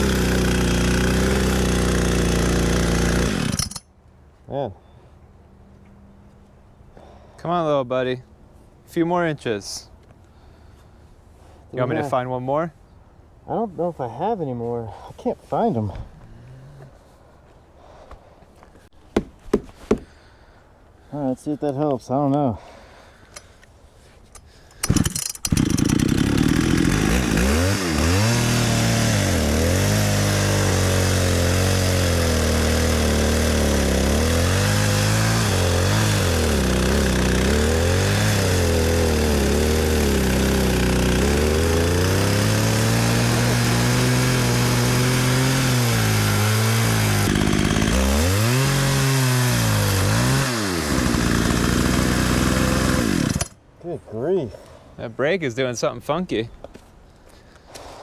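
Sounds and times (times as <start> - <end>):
chainsaw cutting a log: 0.0 - 3.9, 24.8 - 53.6.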